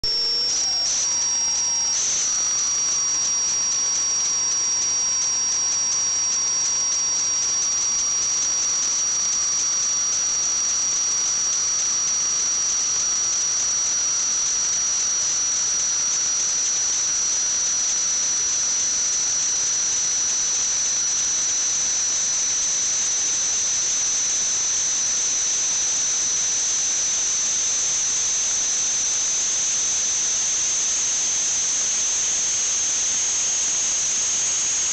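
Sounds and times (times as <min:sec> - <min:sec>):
high-pitched whistle: 0:00.0 - 0:03.6
hiss: 0:00.1 - 0:02.4.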